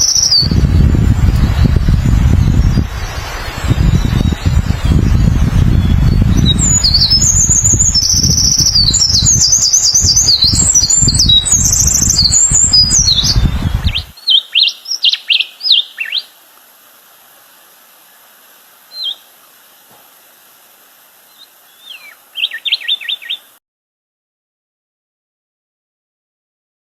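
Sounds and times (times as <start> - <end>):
bird trill: 0.0 - 0.9, 1.5 - 16.3, 18.9 - 19.3, 21.3 - 23.6
songbirds chirping: 0.0 - 23.6.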